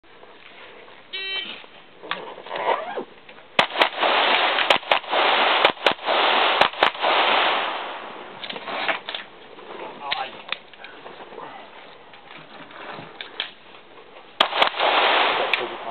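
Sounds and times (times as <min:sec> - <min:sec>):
shot timer beep: 0:01.2 - 0:01.5
pistol shots: 0:03.6 - 0:08.0, 0:14.4 - 0:15.9.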